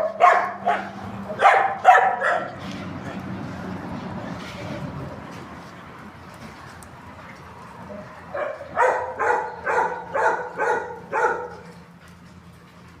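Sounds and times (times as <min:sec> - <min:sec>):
dog barking: 0:00.0 - 0:02.6, 0:08.3 - 0:11.6.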